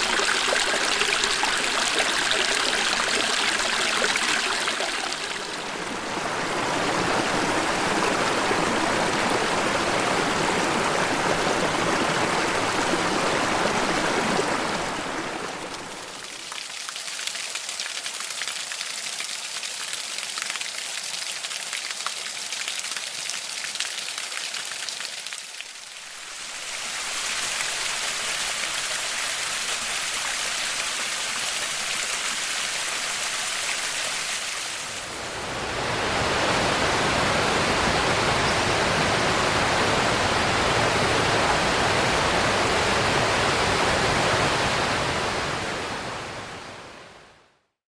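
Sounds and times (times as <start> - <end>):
falling water hiss: 0.0 - 6.0, 21.1 - 35.5
water splashing: 0.0 - 20.3
rushing stream: 0.0 - 47.3.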